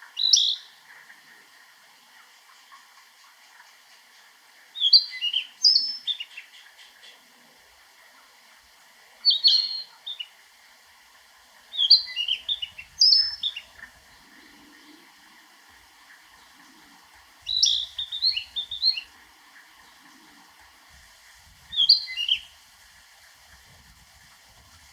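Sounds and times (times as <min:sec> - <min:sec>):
bird singing whistled notes: 0:00.2 - 0:00.7, 0:04.8 - 0:06.6, 0:09.2 - 0:10.3, 0:11.8 - 0:13.7, 0:17.5 - 0:19.1, 0:21.7 - 0:22.5.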